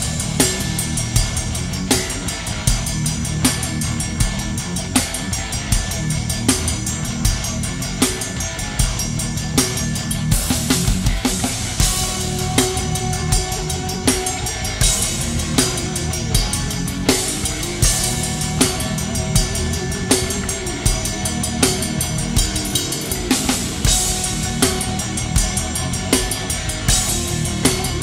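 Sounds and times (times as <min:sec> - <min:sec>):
bass drum strokes: 0:00.0 - 0:28.0
fast metal drumming: 0:00.0 - 0:28.0
cymbals washing: 0:09.6 - 0:28.0.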